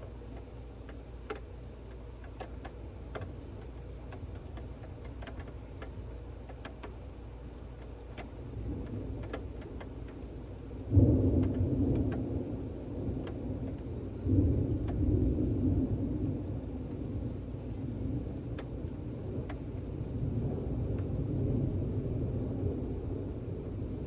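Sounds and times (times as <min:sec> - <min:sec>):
rain: 0:00.0 - 0:24.0
thunder rumbling: 0:08.2 - 0:24.0.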